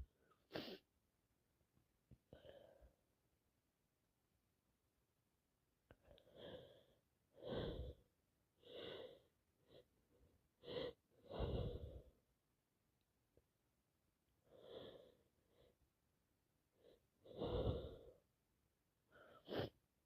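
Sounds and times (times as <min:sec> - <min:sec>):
person sneezing: 0:00.5 - 0:00.8.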